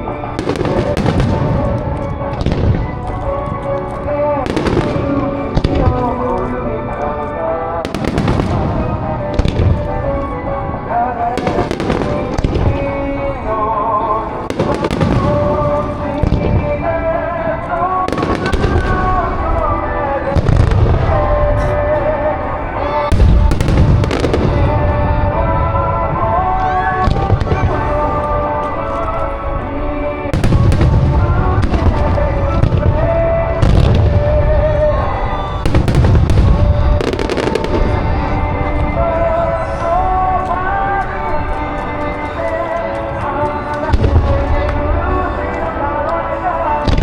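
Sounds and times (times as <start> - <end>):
fireworks booming and crackling: 0.0 - 47.0
music playing: 0.0 - 47.0.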